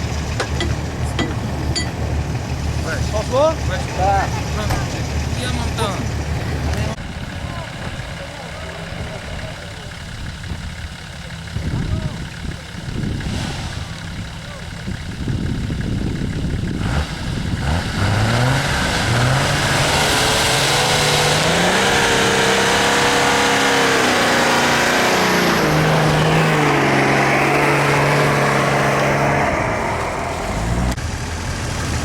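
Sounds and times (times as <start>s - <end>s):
engine revving hard: 12.9s - 14.6s, 15.2s - 32.0s
loud rushing hiss: 13.2s - 14.4s.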